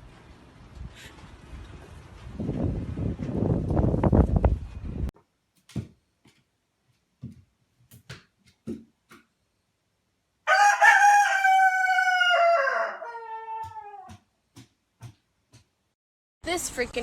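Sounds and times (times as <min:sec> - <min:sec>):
rooster crowing: 0:10.5 - 0:14.2.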